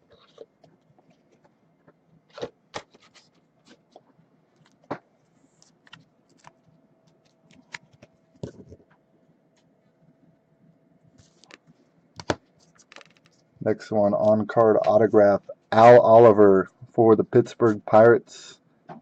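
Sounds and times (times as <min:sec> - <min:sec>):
cards and plastic holders handled: 0:00.1 - 0:04.0, 0:04.6 - 0:08.9, 0:11.2 - 0:13.5.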